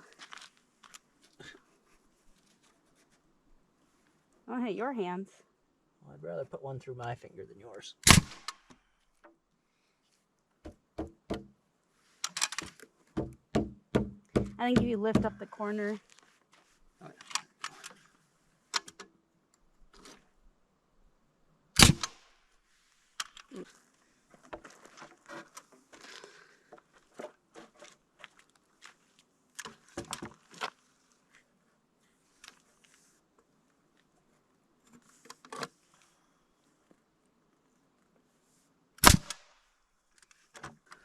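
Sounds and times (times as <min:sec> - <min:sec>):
nail gun shots into wood: 0:08.0 - 0:08.7, 0:21.8 - 0:22.3, 0:39.0 - 0:39.6.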